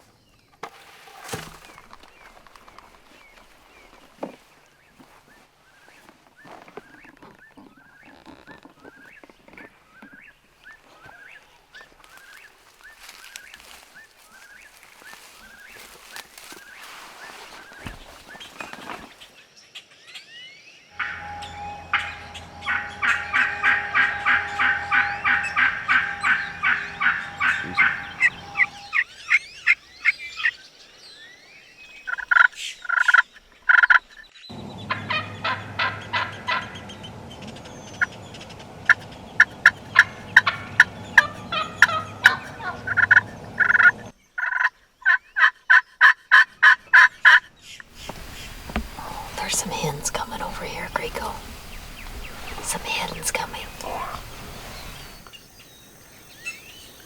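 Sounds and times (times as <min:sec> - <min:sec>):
turkeys gobbling: 0:21.0 - 0:30.5, 0:34.8 - 0:55.4.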